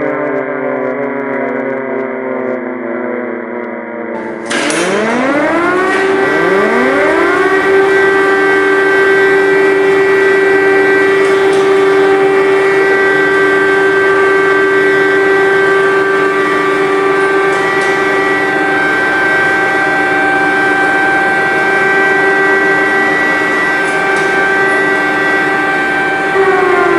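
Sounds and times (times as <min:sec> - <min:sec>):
air-raid sirens wailing: 0:00.0 - 0:26.9.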